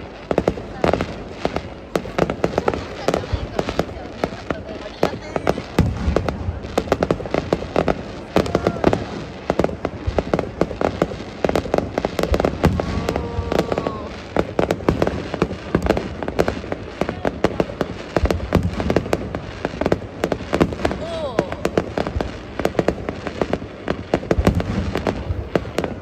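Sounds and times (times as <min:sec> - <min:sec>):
fireworks crackling: 0:00.0 - 0:26.0.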